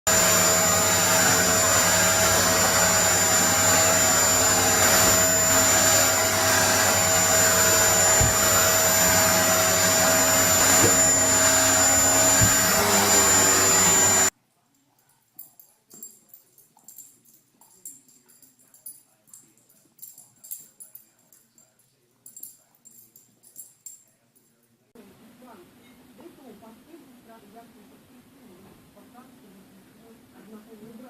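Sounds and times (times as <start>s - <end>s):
vacuum cleaner running: 0.1s - 14.3s.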